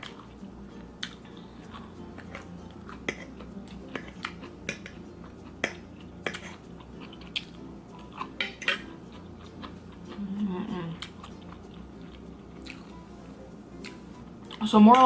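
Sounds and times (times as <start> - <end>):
person chewing food: 0.0 - 14.6
wet mouth clicks: 12.6 - 12.9.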